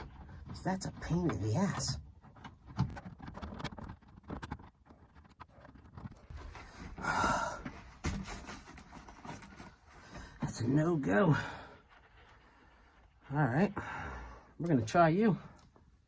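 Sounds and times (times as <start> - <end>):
heavy breath out: 6.6 - 8.2, 13.7 - 14.6.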